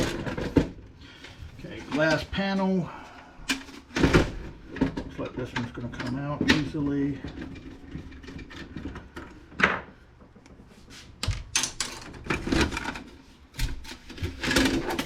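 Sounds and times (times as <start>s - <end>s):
plastic clacks and rattles: 0.0s - 0.8s, 3.5s - 10.5s, 11.2s - 15.0s.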